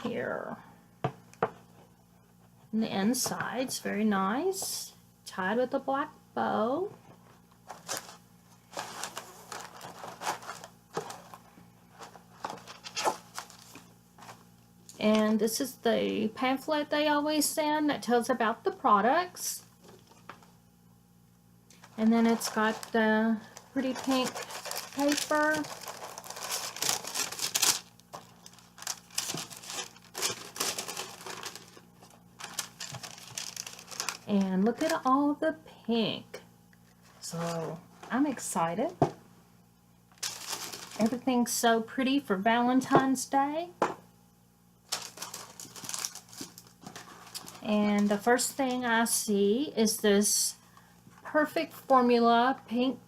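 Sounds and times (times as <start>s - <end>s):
paper packaging rustling: 7.6s - 14.4s, 21.8s - 35.1s, 40.1s - 41.2s, 44.9s - 48.8s.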